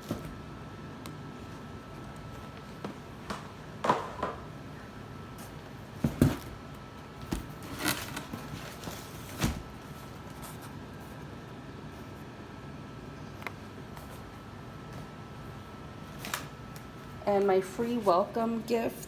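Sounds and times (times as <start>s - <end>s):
packages set down knocking: 6.0s - 6.6s, 7.2s - 9.8s.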